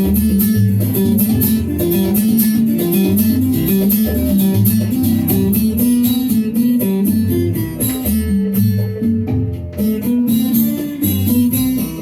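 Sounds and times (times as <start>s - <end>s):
percussion strokes: 0.0s - 12.0s
plucked guitar: 0.0s - 12.0s
walking bass line: 0.0s - 12.0s.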